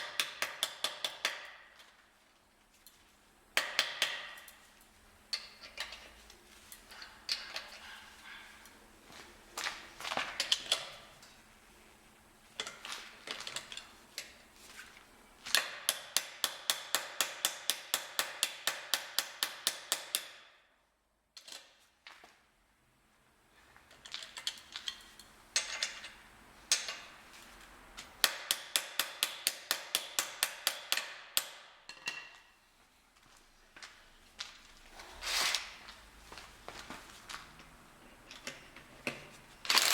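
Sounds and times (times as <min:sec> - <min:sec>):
hammer striking metal: 0:28.2 - 0:32.3.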